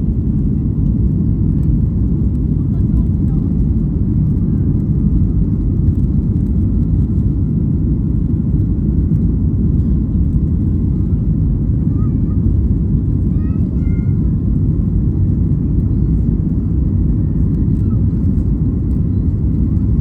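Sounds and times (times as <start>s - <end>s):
airliner cabin rumble: 0.0s - 20.0s.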